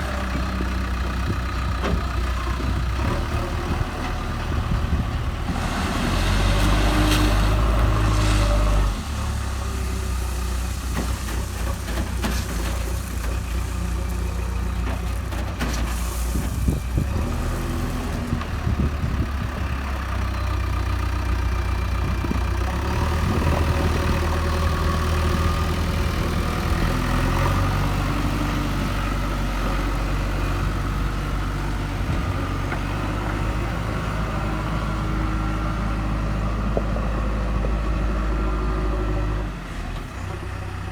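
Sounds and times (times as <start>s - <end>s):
diesel engine running under load: 0.0s - 40.9s.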